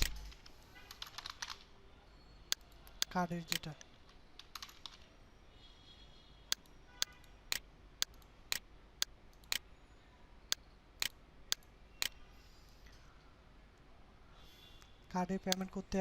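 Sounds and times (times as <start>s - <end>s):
sharp clicks: 0.0s - 1.6s, 2.5s - 5.0s, 6.5s - 9.6s, 10.5s - 12.2s, 15.5s - 15.8s.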